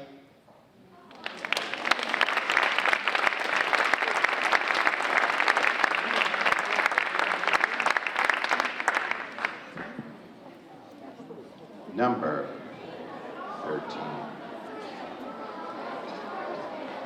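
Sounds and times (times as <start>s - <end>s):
children clapping: 1.0s - 10.0s.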